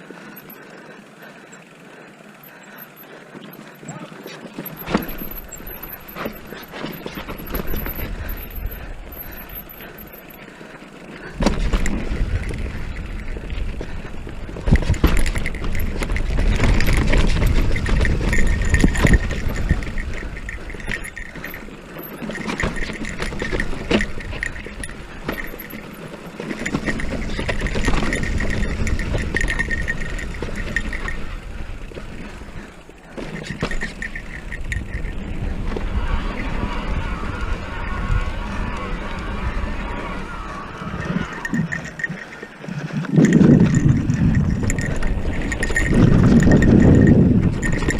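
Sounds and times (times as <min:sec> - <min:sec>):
bike rattling: 0:00.0 - 0:47.9
bike tyres on dirt and rock: 0:00.0 - 0:47.9
rapid ticking: 0:00.0 - 0:47.9
wind on microphone: 0:34.4 - 0:41.9, 0:42.8 - 0:47.9.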